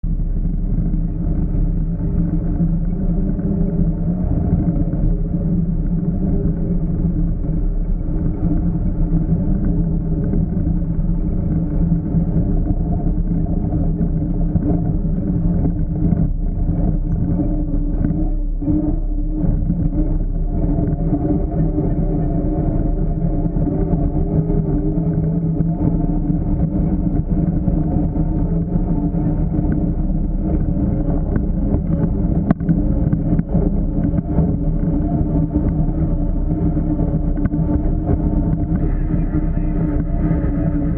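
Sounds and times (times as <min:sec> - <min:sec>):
off-road vehicle engine running: 0:00.0 - 0:40.9.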